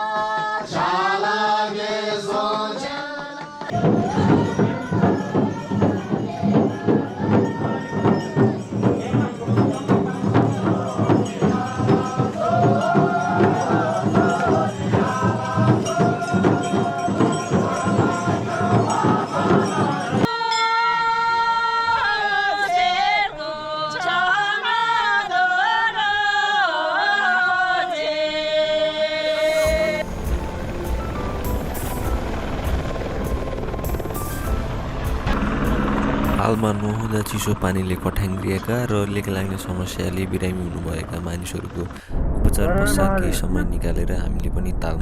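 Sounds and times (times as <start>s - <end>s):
group chanting: 0.0s - 30.0s
steady drumming: 3.6s - 20.3s, 29.4s - 45.0s
jingling percussion: 3.6s - 21.6s, 29.4s - 41.8s.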